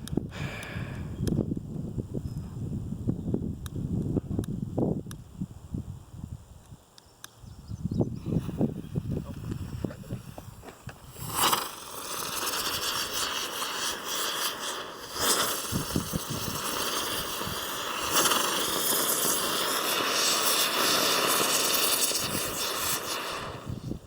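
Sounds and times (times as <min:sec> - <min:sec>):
fireworks hissing: 0:00.1 - 0:01.2, 0:08.1 - 0:24.0.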